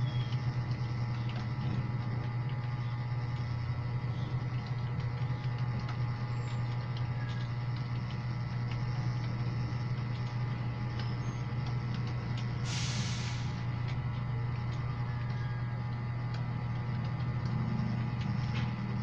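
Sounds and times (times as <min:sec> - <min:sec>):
low electrical hum: 0:00.0 - 0:19.0
burst of hiss: 0:12.6 - 0:13.6.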